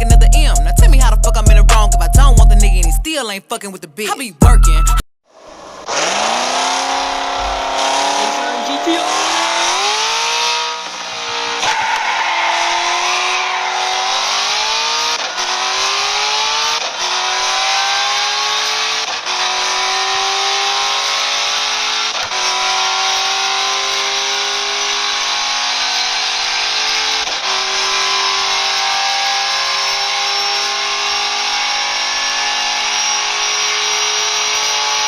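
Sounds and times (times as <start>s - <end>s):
car engine accelerating: 5.3s - 35.0s
wind and tyre noise: 5.4s - 35.0s.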